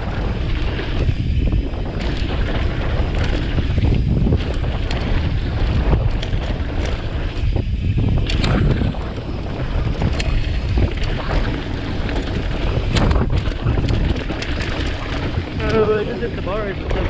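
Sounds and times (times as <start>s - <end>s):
wind buffeting microphone: 0.0s - 17.0s
small clicks: 8.2s - 9.3s.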